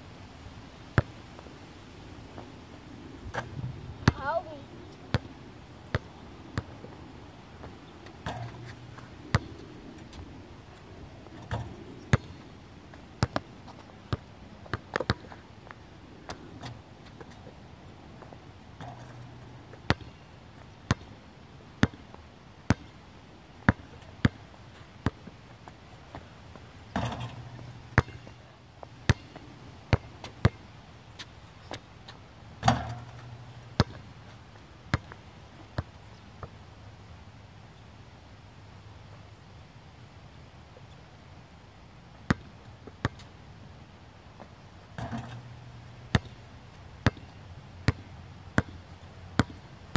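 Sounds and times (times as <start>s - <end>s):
basketball bouncing on court: 8.2s - 9.6s, 11.5s - 12.4s, 18.8s - 20.2s, 20.9s - 21.1s, 21.8s - 22.0s, 27.0s - 28.4s, 29.1s - 30.6s, 32.6s - 34.1s, 45.0s - 46.4s, 47.0s - 48.0s, 48.6s - 48.8s, 49.4s - 49.6s.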